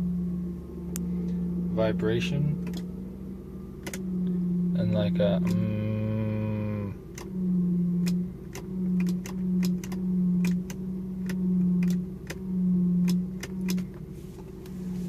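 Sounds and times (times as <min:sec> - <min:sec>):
low droning hum in car: 0:00.0 - 0:15.0
steady car rumble: 0:00.0 - 0:15.0
sharp ticks: 0:08.0 - 0:12.4, 0:13.0 - 0:13.9.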